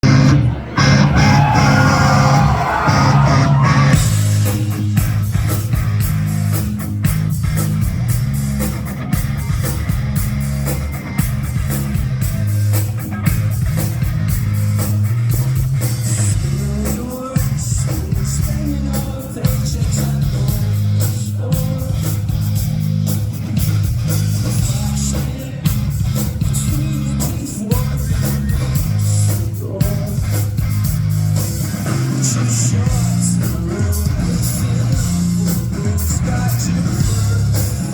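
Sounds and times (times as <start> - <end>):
live rock band playing: 0.0 - 37.9
person singing: 16.2 - 22.4, 24.4 - 30.5, 31.7 - 37.9.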